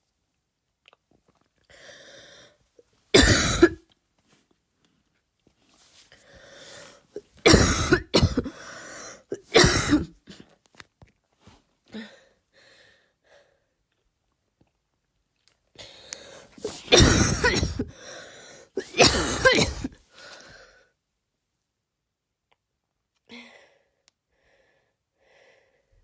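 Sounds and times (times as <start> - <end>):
quiet breathing: 1.7 - 2.7, 5.7 - 7.2, 8.5 - 9.3, 11.4 - 13.8, 15.8 - 16.9, 17.9 - 18.8, 20.0 - 21.0, 23.3 - 26.0
woman coughing: 3.2 - 3.8, 7.2 - 10.2, 16.6 - 18.0, 18.8 - 20.0.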